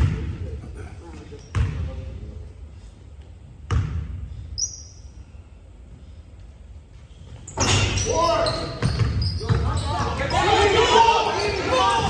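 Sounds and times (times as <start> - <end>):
low gym rumble: 0.0 - 12.0
basketball bouncing on wooden floor: 3.7 - 4.1, 8.8 - 10.4.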